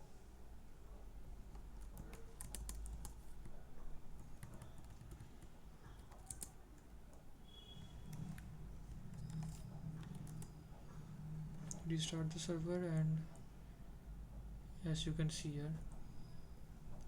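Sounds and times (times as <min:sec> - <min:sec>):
keyboard typing: 0:01.5 - 0:07.2, 0:07.8 - 0:13.5.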